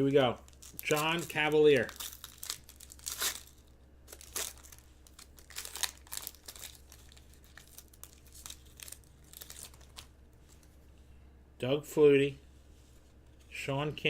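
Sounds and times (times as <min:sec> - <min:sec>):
wrapper crinkling: 0:00.4 - 0:10.8.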